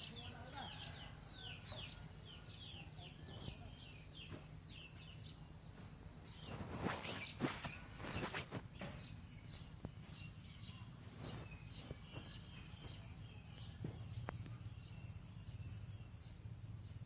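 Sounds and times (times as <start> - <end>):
bird chirping: 0.0 - 17.0.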